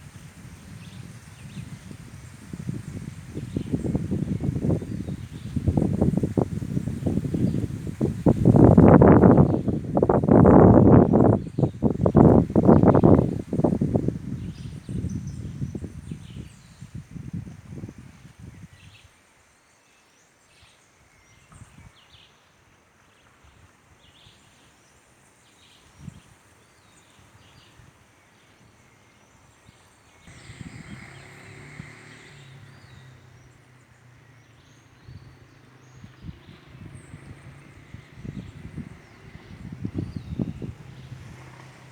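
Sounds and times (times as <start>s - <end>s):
small birds chirping: 0.7s - 17.0s, 29.5s - 41.9s
low engine-like hum: 30.3s - 41.9s
low rumbles: 30.3s - 41.9s.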